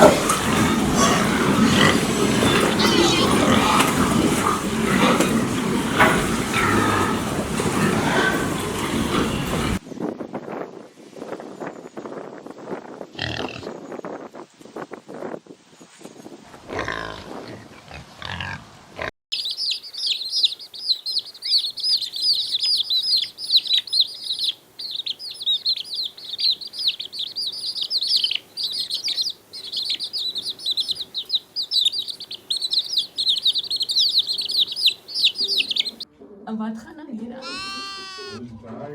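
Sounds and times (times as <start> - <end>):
many birds chirping: 0.0 - 9.8, 19.4 - 36.1, 37.4 - 38.4
short animal call: 37.4 - 38.4.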